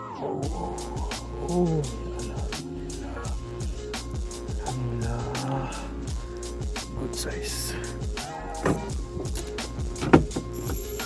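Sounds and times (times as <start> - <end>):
music with deep thumping beat: 0.4 - 11.0.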